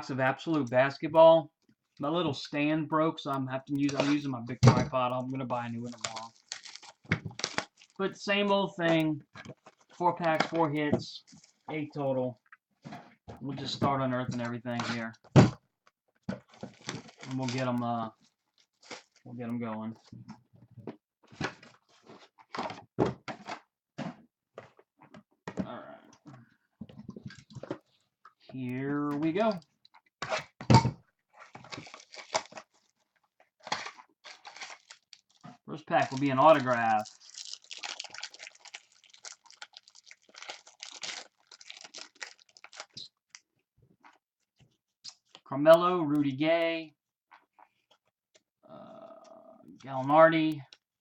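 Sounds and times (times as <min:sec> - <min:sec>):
card boxes handled and opened: 0:03.3 - 0:12.1, 0:12.8 - 0:15.6, 0:16.2 - 0:19.2, 0:19.9 - 0:28.2, 0:28.8 - 0:38.0
card pack wrapper crinkling: 0:05.5 - 0:08.0, 0:11.2 - 0:11.7, 0:16.5 - 0:19.3, 0:31.5 - 0:33.0, 0:33.6 - 0:43.4.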